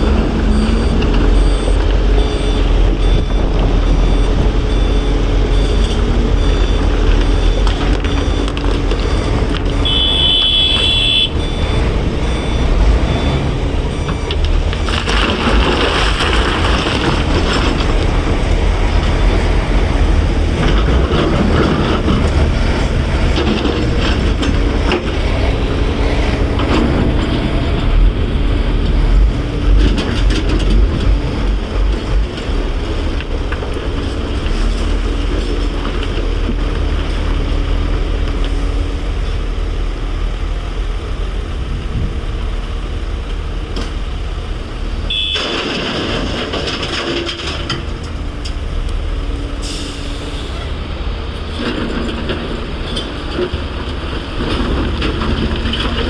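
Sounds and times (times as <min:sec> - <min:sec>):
heavy diesel machinery running: 0:00.0 - 0:56.0
short high beep: 0:09.8 - 0:14.0.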